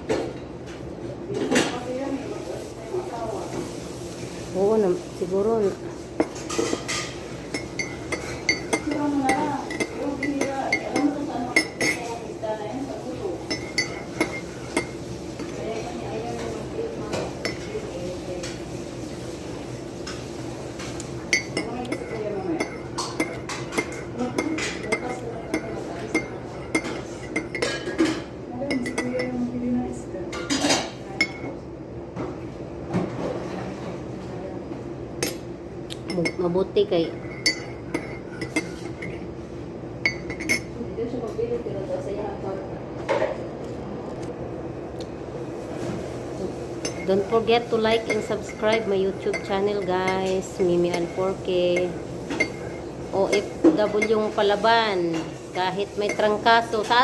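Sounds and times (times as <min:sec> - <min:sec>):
spoon clinking against a cup: 0:06.2 - 0:12.2, 0:13.4 - 0:15.0, 0:17.4 - 0:17.8, 0:21.3 - 0:29.4, 0:30.5 - 0:31.5, 0:35.2 - 0:39.2, 0:40.0 - 0:40.8, 0:46.8 - 0:57.0.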